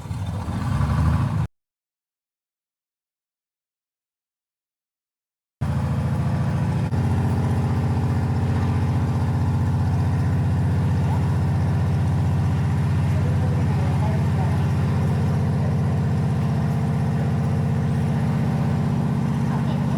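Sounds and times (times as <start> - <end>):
propeller plane engine droning: 5.6 - 19.9.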